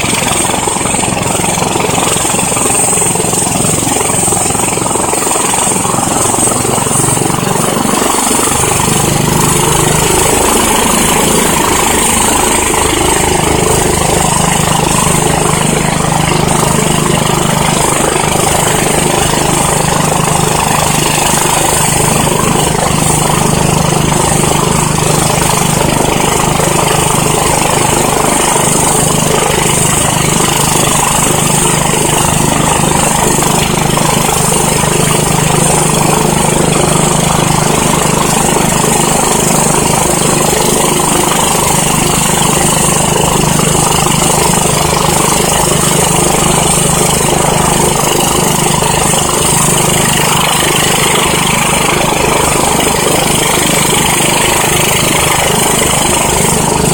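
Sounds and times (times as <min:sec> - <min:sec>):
low hum: 0:00.0 - 0:30.2
helicopter rotor beat: 0:00.0 - 0:56.9
helicopter turbine whine: 0:00.0 - 0:56.9.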